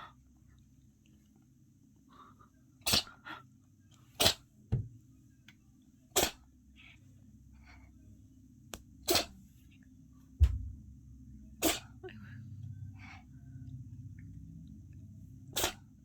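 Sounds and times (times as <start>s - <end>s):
cat sneezing: 2.8s - 3.4s, 4.1s - 4.5s, 6.1s - 6.5s, 9.0s - 9.4s, 11.6s - 12.0s, 15.5s - 15.9s
short low thump: 10.4s - 11.0s.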